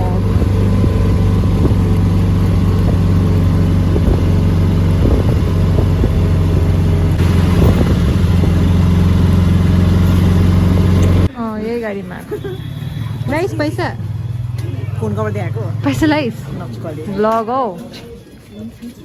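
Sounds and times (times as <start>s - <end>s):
auto-rickshaw engine running: 0.0s - 11.3s, 12.2s - 17.2s
light rattling clatter: 0.0s - 11.3s.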